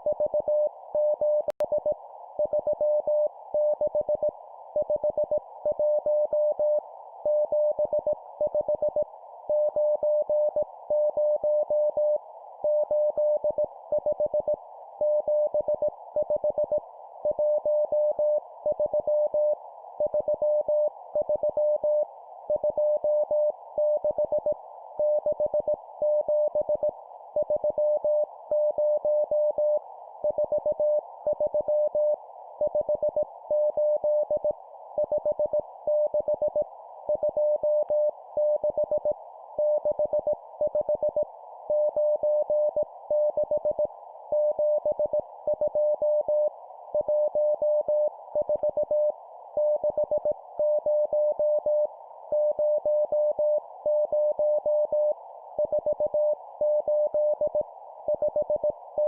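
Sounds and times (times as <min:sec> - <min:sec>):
morse code beeps: 0:44.4 - 0:58.7.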